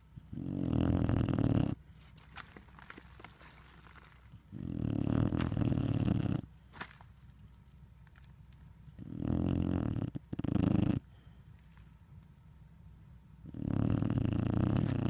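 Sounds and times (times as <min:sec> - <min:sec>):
dog snoring: 0:00.0 - 0:01.8, 0:04.5 - 0:06.5, 0:09.0 - 0:11.1, 0:13.4 - 0:15.0.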